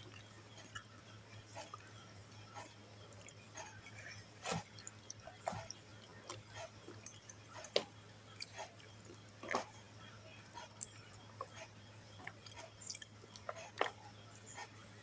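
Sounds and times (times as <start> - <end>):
person chewing noodles: 0.0 - 15.0
steady low hum: 0.0 - 15.0.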